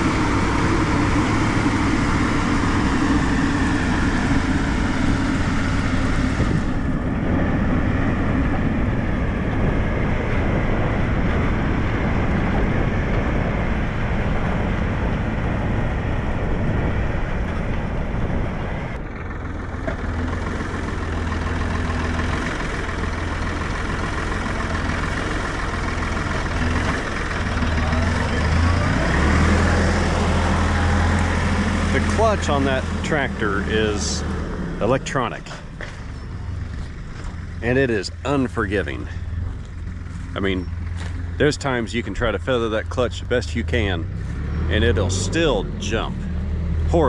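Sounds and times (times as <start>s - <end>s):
vehicle engine running: 0.0s - 47.0s.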